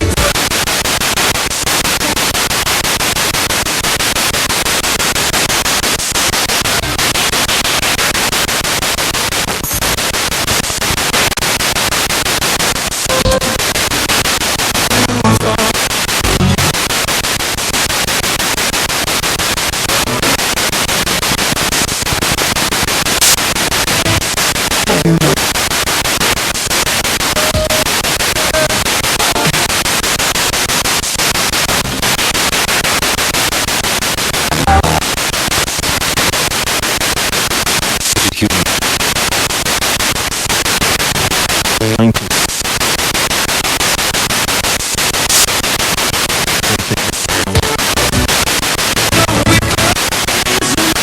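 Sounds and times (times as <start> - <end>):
radio tones: 0.0 - 2.3, 12.9 - 17.4, 19.8 - 25.7, 26.8 - 30.0, 34.3 - 35.3, 38.0 - 38.8, 41.0 - 42.7, 44.8 - 51.0
radio static hiss: 0.0 - 51.0
snatches of radio voices: 19.8 - 25.6, 26.7 - 30.0, 34.3 - 35.7, 37.9 - 39.1, 40.7 - 42.8, 44.6 - 51.0.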